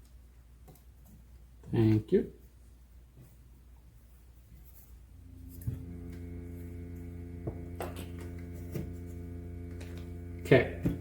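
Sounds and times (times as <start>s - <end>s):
steady tonal hum: 5.1s - 11.0s.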